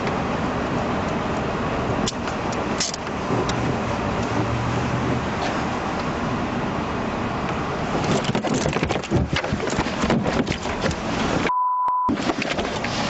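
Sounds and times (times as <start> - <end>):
vehicle rumble: 0.0 - 13.0
crackling clicks and rustles: 2.0 - 3.6, 7.9 - 11.5, 12.1 - 13.0
high beep: 11.5 - 12.1.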